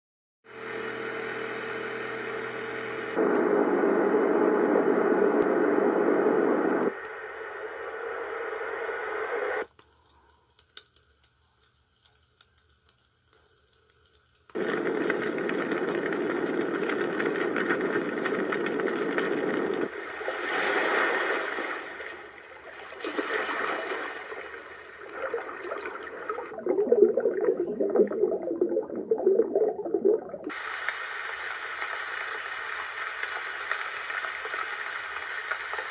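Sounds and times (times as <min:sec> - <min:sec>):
white noise machine hiss: 0:00.5 - 0:10.4, 0:27.1 - 0:35.9
faint clicks: 0:09.6 - 0:14.6.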